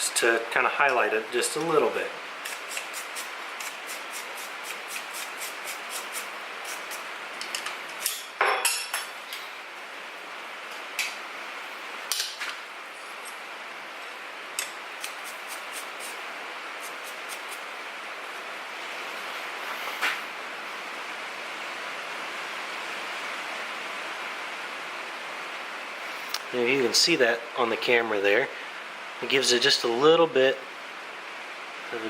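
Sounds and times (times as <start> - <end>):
steady hiss: 0.0 - 32.0
wire brush scrubbing hot steel: 1.4 - 8.3, 14.6 - 17.8.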